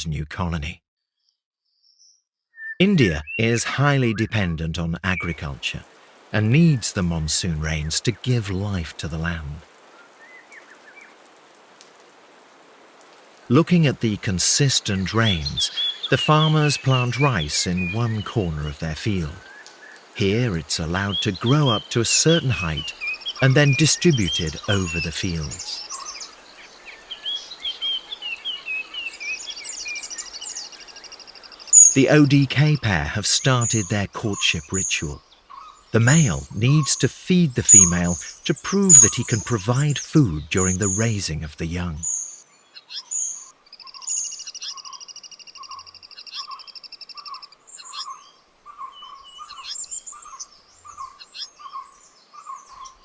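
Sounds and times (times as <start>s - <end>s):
short bird chirps: 1.2s - 3.4s
low repeated bird notes: 1.9s - 11.3s, 13.4s - 53.0s
bird trilling rapidly: 27.0s - 32.1s.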